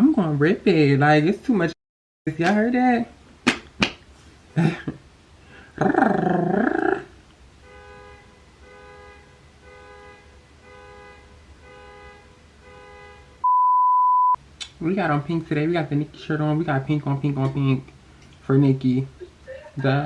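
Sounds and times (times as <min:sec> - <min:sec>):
low drawn-out vocal sound: 0:05.7 - 0:07.2
censor beep: 0:13.4 - 0:14.4.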